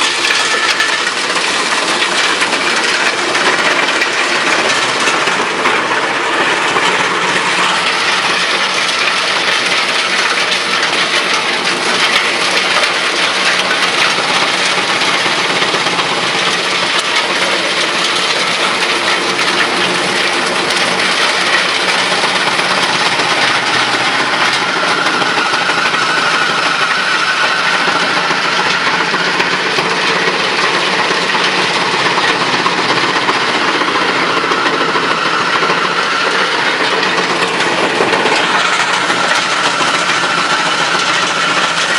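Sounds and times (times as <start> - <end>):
wood chipper running: 0.0 - 41.9.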